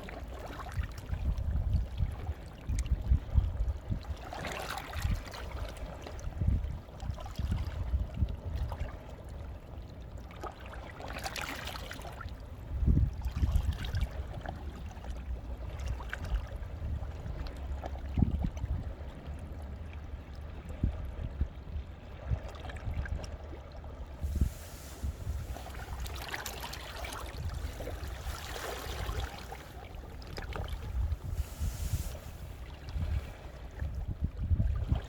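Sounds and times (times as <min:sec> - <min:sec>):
water trickling and gurgling: 0:12.9 - 0:35.0
low uneven rumble: 0:14.1 - 0:35.0
sea waves washing over rocks: 0:24.2 - 0:33.7.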